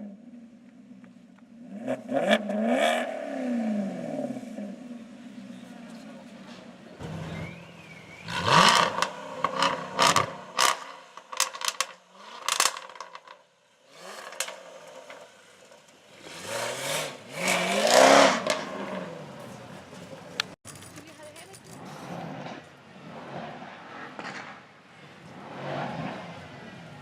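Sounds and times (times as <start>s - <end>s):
sports car engine revving: 1.5s - 20.6s
exhaust pops and cracks: 8.7s - 13.4s, 24.2s - 24.7s.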